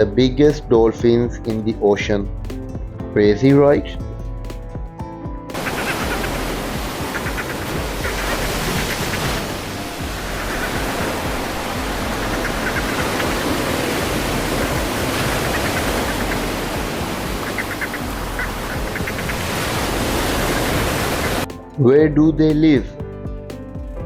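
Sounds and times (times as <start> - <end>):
soft music: 0.0 - 24.0
ocean water rushing: 5.5 - 21.6.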